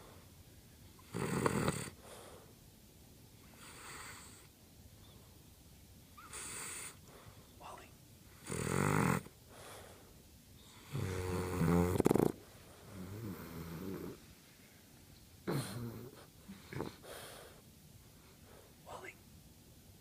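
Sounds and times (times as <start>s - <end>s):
pet snoring: 1.0s - 2.3s, 3.5s - 4.5s, 6.2s - 7.0s, 8.4s - 9.8s, 10.6s - 14.2s, 15.4s - 17.5s.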